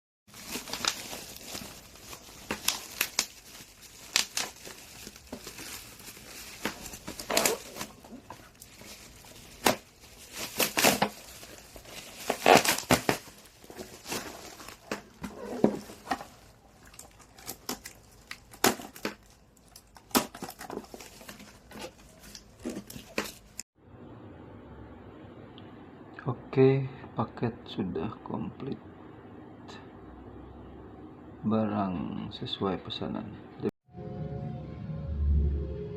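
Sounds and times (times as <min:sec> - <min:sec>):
packaging crinkling and tearing: 0:00.3 - 0:23.6.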